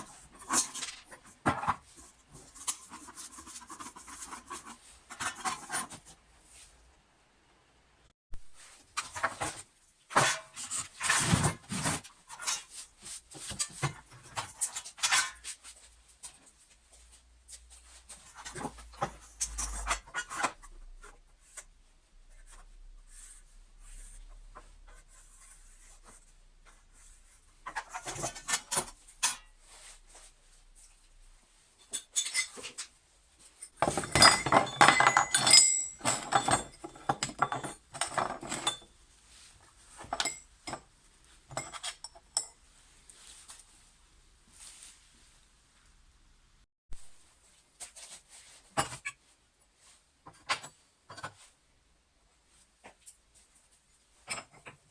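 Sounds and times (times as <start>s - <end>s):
metal parts and tools clinking: 31.8s - 32.9s, 33.5s - 40.9s, 41.5s - 42.6s.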